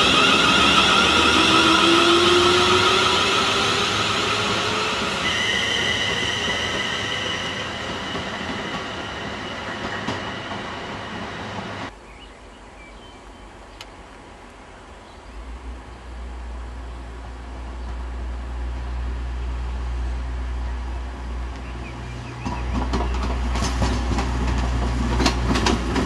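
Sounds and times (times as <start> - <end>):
train wheels squealing: 0.0 - 11.9.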